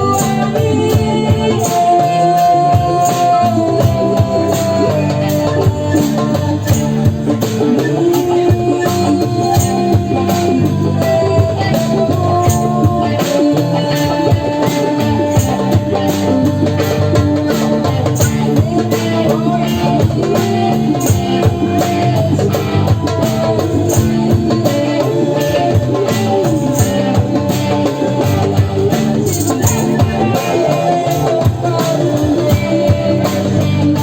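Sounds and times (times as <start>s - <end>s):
psychedelic jam music: 0.0s - 34.0s.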